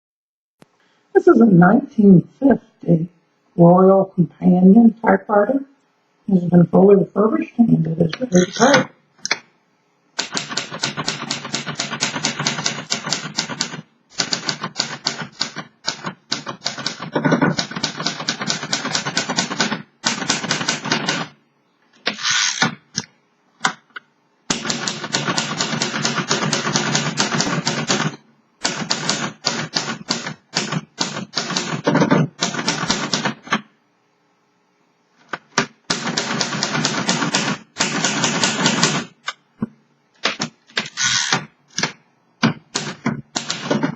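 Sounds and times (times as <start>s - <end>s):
manual typewriter typing: 10.2s - 21.4s, 24.5s - 33.6s, 35.3s - 39.2s, 42.7s - 43.9s.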